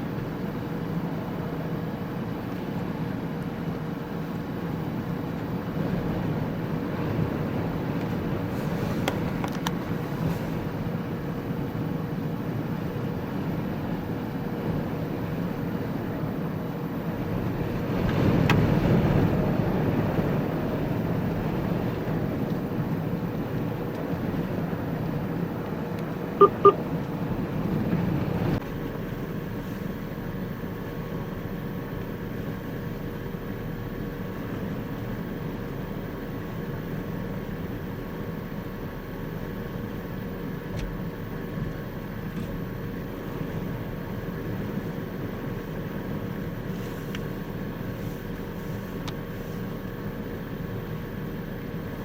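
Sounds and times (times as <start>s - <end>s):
road and engine noise: 0.0s - 52.0s
short electronic beeps: 26.4s - 26.8s.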